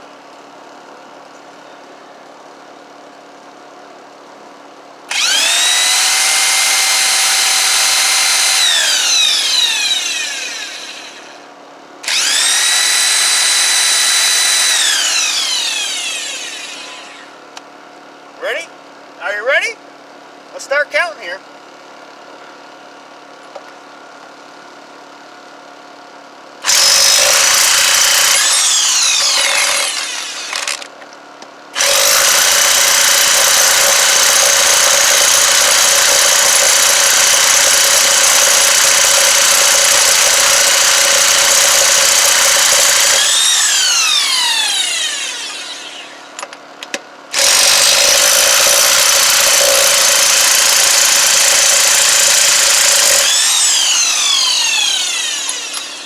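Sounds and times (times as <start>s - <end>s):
impact wrench on lug nuts: 26.7s - 30.9s.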